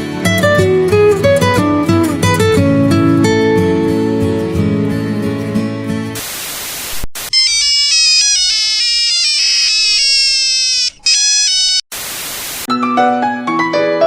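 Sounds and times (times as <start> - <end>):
bursts of hiss: 6.2 - 7.5, 11.9 - 12.7
electronic ringtone melody: 7.4 - 11.8.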